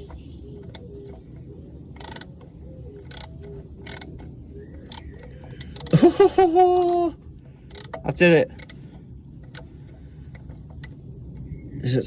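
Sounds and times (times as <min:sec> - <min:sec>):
hand ratchet clicking: 0:02.0 - 0:02.4, 0:03.1 - 0:04.2, 0:04.8 - 0:06.1, 0:06.7 - 0:07.0, 0:07.7 - 0:09.7
vocal cry rising in pitch: 0:05.9 - 0:07.2.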